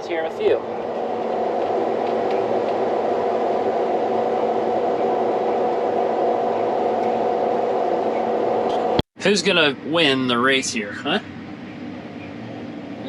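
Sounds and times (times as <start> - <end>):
combine harvester whirring in cab: 0.0 - 9.0.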